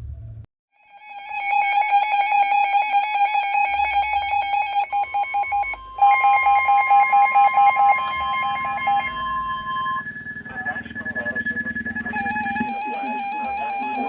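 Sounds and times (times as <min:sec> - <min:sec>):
steady alert tone: 0:03.4 - 0:14.0
chopped data-burst tones: 0:03.7 - 0:14.0.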